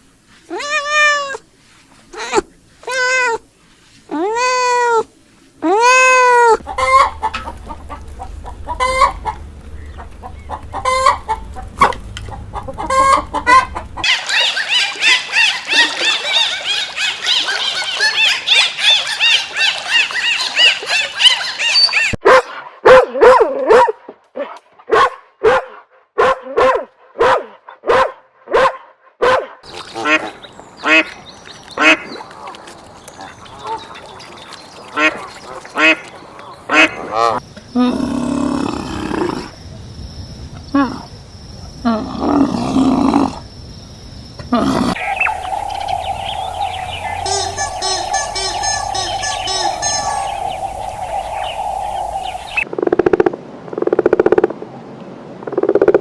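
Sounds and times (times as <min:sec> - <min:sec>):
cat meowing: 0:00.5 - 0:01.4
chickens clucking: 0:06.6 - 0:14.3, 0:44.9 - 0:52.7
high chirping chorus: 0:06.6 - 0:15.3, 0:43.0 - 0:52.7
short repeated calls: 0:44.9 - 0:52.6.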